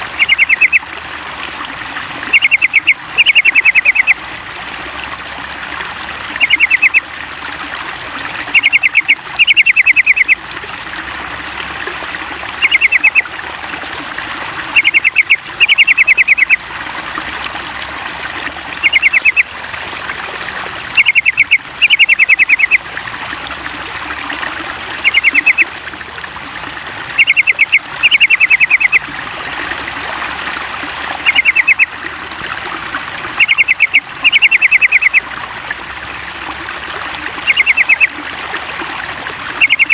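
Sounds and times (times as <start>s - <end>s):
trickling water: 0.0s - 39.9s
bird chattering calls: 0.2s - 0.8s, 2.3s - 4.2s, 6.4s - 7.0s, 8.5s - 10.4s, 12.6s - 13.2s, 14.8s - 16.6s, 18.8s - 19.4s, 21.0s - 22.8s, 25.0s - 25.6s, 27.2s - 29.0s, 31.3s - 31.9s, 33.4s - 35.2s, 37.5s - 38.1s, 39.6s - 39.9s.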